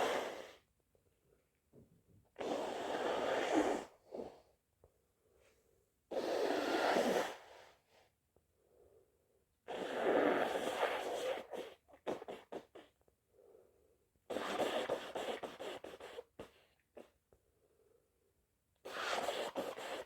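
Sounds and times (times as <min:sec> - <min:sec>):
person blowing nose: 0:00.0 - 0:00.6, 0:02.4 - 0:04.4, 0:06.1 - 0:07.7, 0:09.7 - 0:13.0, 0:14.3 - 0:17.1, 0:18.8 - 0:20.0.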